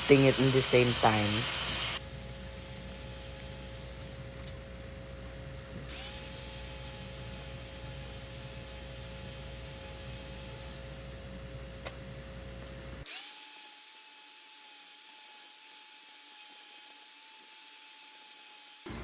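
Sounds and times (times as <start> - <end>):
power tool motor whining: 0.0 - 2.0.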